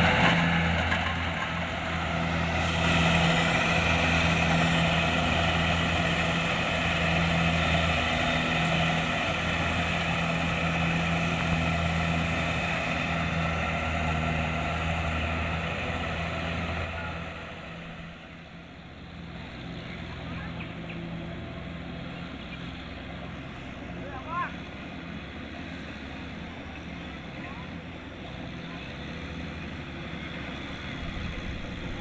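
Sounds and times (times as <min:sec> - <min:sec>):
machinery whine: 0:00.0 - 0:19.0
combine harvester engine hum: 0:00.0 - 0:32.0.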